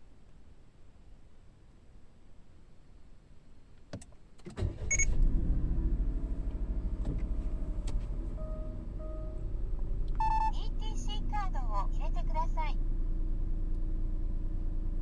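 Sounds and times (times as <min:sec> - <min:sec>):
car engine starting and idling: 0:04.4 - 0:15.0
short high tone: 0:10.2 - 0:11.1.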